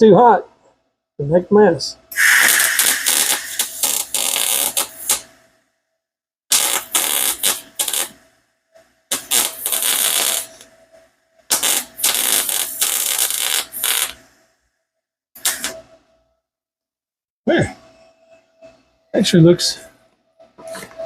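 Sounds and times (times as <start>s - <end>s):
welding arc crackle: 2.2s - 5.3s, 6.5s - 8.2s, 9.1s - 10.6s, 11.5s - 14.2s, 15.4s - 15.8s.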